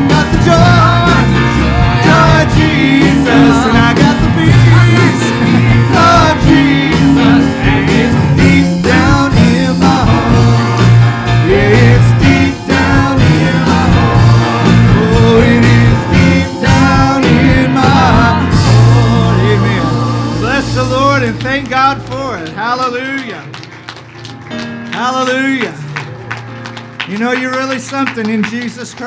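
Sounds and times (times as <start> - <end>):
people singing: 0.0 - 22.4
live worship band playing: 0.0 - 29.0.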